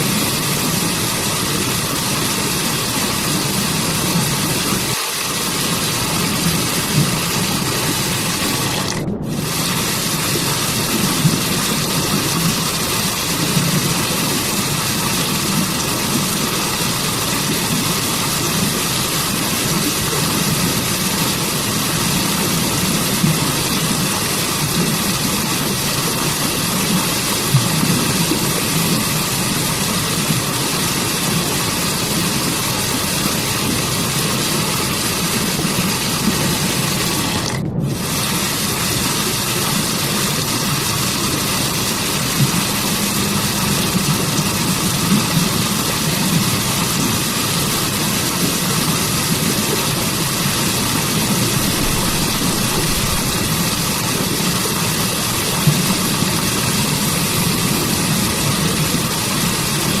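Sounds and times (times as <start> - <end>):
waterfall rushing: 0.0 - 60.0.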